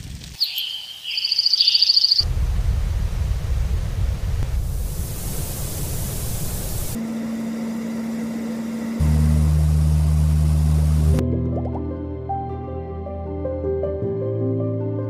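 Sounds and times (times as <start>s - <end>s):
sound machine hiss: 0.5s - 11.2s
low hum: 2.2s - 12.0s
low tone: 7.0s - 12.8s.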